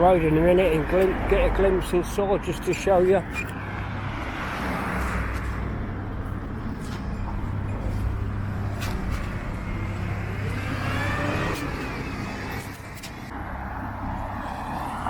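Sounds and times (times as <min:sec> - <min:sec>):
vehicle engine humming: 0:00.0 - 0:15.0
car passing by: 0:08.6 - 0:15.0.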